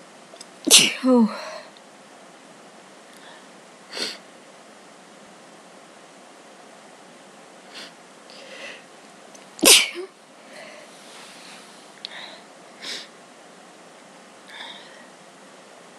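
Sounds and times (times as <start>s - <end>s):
person sneezing: 0.7s - 1.5s, 9.6s - 10.1s
sniffs and breaths: 10.5s - 13.1s.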